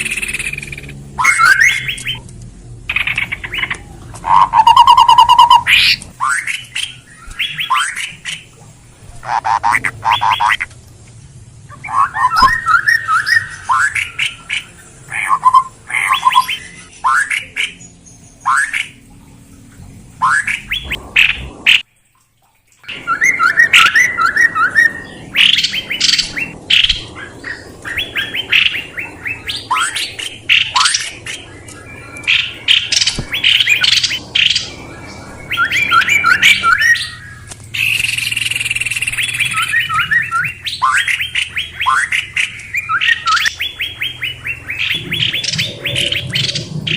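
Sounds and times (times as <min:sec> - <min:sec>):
songbird chirping: 0:00.0 - 0:02.3, 0:11.7 - 0:46.9.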